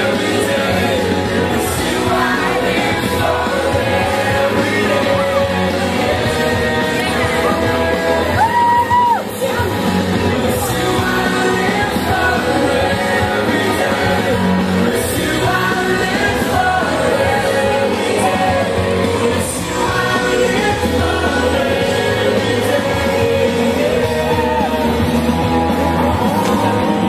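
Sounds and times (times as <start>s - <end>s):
loud music with singing: 0.0s - 27.0s
high shout or whoop: 8.3s - 9.3s, 24.1s - 27.0s.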